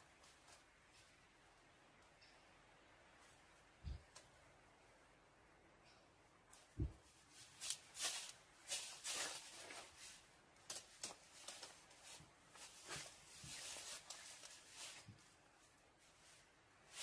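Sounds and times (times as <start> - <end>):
rustling and crinkling: 0.0 - 1.6, 6.5 - 17.0.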